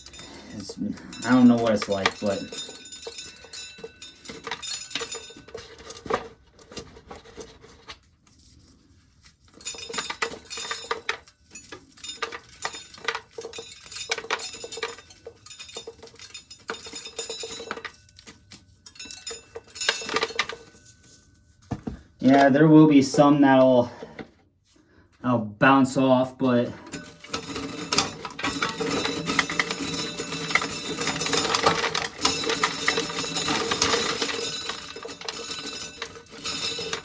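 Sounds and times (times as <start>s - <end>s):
kernels clattering against metal: 0.0s - 6.2s, 9.5s - 21.0s, 26.8s - 37.0s
corn sheller working: 0.0s - 7.8s, 9.6s - 18.4s, 26.8s - 37.0s.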